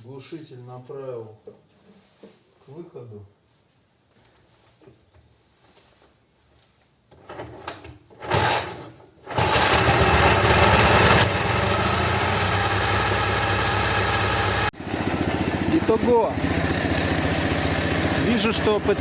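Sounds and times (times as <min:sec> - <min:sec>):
motorcycle engine cranking: 0:07.2 - 0:11.4
motorcycle engine idling: 0:11.4 - 0:19.0.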